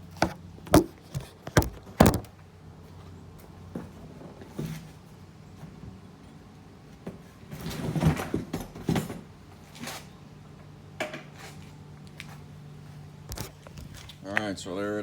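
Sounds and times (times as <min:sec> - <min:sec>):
knocks and scrapes on cardboard box: 0:00.2 - 0:02.3.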